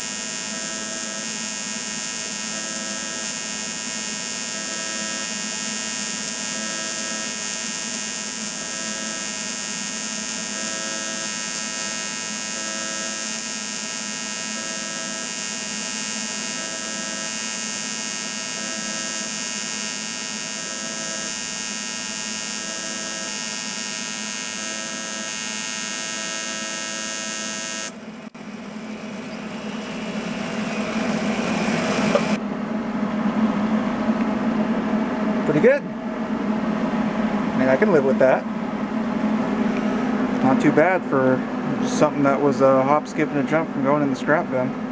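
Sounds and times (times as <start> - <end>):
welding arc buzzing: 0.0 - 32.4.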